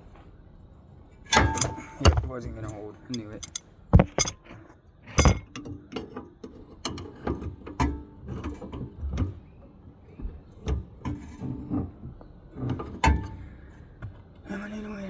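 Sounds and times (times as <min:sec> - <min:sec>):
sharp metal knock: 0:01.3 - 0:04.4, 0:05.2 - 0:05.5
hand tools clicking and knocking metal: 0:01.4 - 0:04.4, 0:05.1 - 0:05.7.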